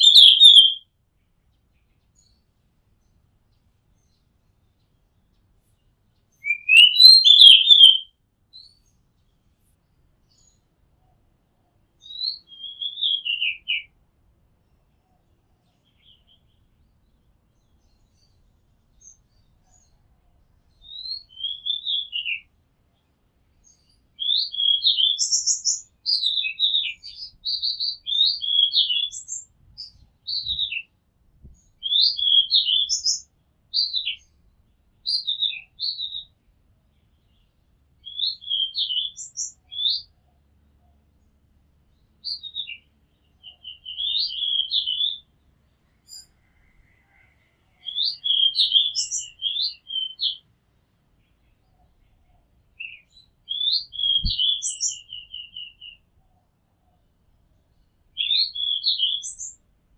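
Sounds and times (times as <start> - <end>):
bird whistled song: 0.0 - 0.8, 6.3 - 8.8, 12.0 - 13.9, 20.7 - 22.5, 23.6 - 30.9, 31.5 - 34.3, 35.0 - 36.3, 38.0 - 40.1, 42.2 - 45.3, 46.0 - 50.4, 51.4 - 56.1, 58.1 - 59.6.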